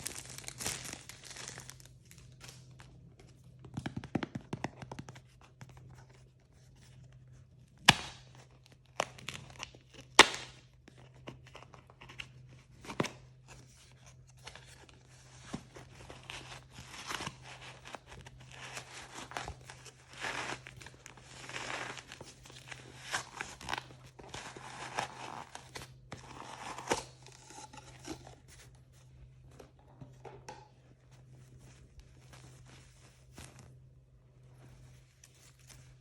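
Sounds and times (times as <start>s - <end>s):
plastic packaging crinkling and tearing: 0.0s - 2.9s.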